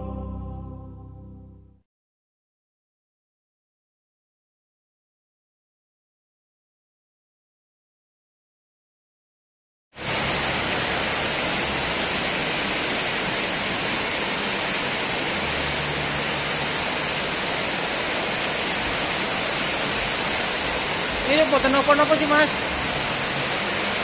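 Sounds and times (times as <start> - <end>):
heavy rain pouring: 10.0 - 24.0.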